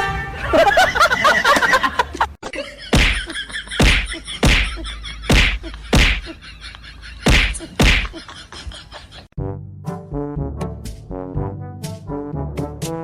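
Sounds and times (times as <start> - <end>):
brass music: 0.0 - 0.8, 9.4 - 13.0
heavy whacks: 2.9 - 6.3, 7.2 - 8.2.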